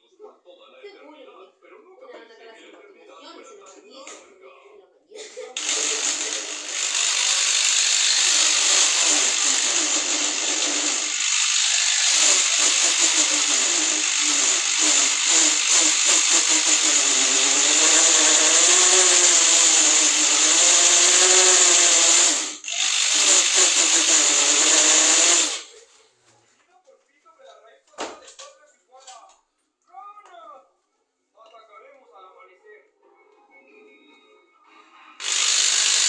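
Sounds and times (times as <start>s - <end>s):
electric drill running: 5.6s - 25.7s, 35.2s - 36.0s.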